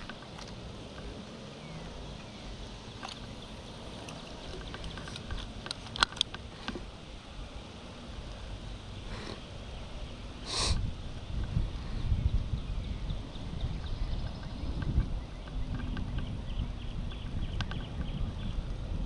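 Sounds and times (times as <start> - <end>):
wind rumbling on microphone: 0.0 - 19.0
short hiss: 10.4 - 10.8.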